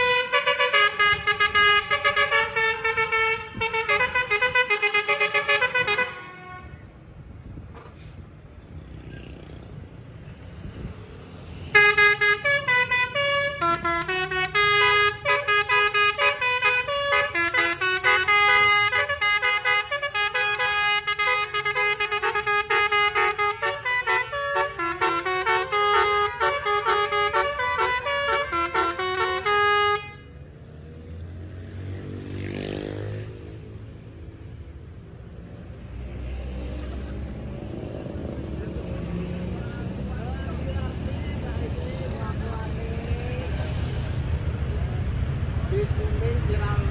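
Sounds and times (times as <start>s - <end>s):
musical bus horn playing a tune: 0.0s - 6.9s, 11.7s - 30.4s
engine revving: 35.7s - 46.9s
low engine rumble: 38.1s - 46.9s.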